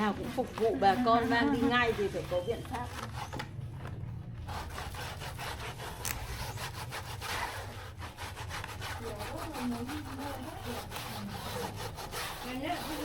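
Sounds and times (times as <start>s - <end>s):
rapid scraping strokes: 0.0s - 13.0s.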